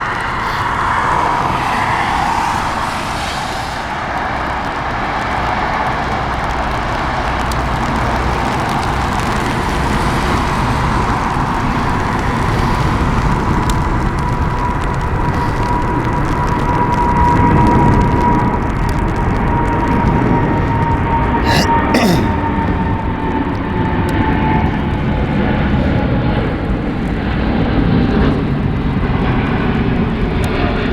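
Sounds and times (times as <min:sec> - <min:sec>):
jet engines roaring at take-off: 0:00.0 - 0:30.9.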